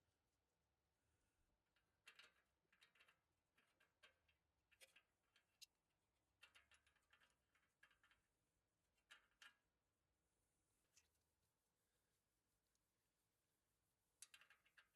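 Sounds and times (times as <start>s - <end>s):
faint clicks and taps: 14.2s - 14.9s.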